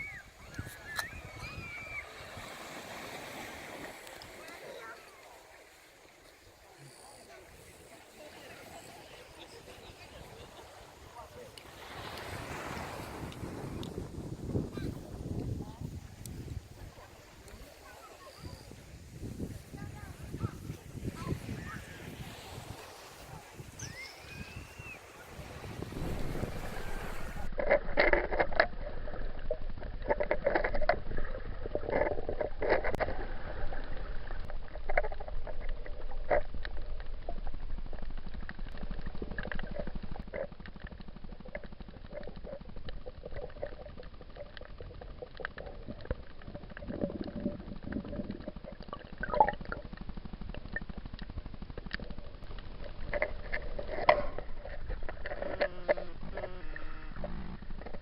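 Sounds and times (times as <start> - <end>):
muffled underwater gurgling: 4.3 - 58.0
clicks and pops: 27.1 - 58.0.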